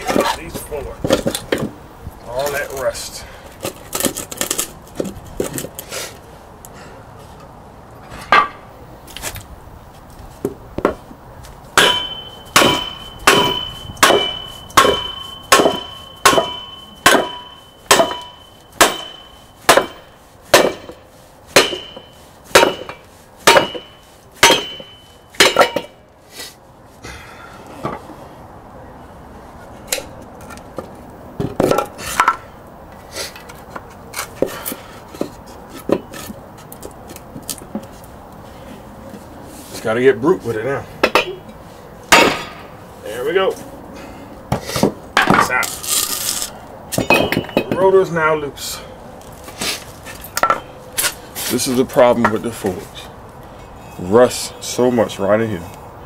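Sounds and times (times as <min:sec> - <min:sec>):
hammer striking metal: 0:11.8 - 0:21.0, 0:21.6 - 0:26.0, 0:41.0 - 0:41.4, 0:42.1 - 0:42.7, 0:46.9 - 0:47.8.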